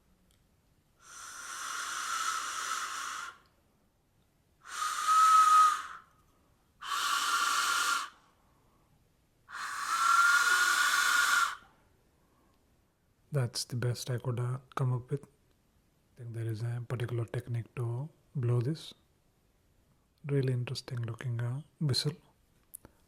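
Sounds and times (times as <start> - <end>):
breathy train whistle: 4.7 - 6.1.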